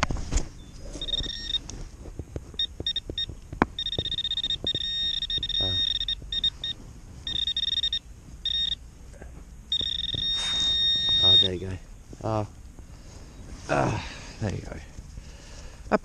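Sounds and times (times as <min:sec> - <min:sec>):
metal detector beeping: 0:00.8 - 0:01.7, 0:02.6 - 0:08.8, 0:09.7 - 0:11.8.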